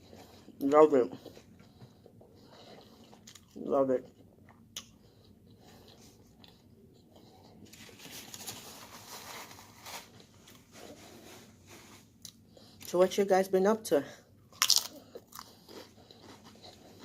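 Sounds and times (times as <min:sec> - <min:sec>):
person chewing food: 0:00.0 - 0:08.5, 0:12.2 - 0:12.9, 0:14.4 - 0:17.0.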